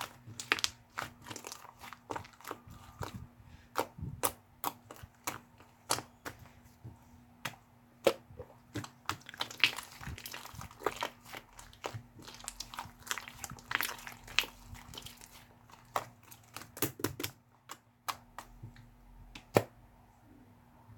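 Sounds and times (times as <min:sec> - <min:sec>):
slime clicking and popping: 0:08.0 - 0:18.6.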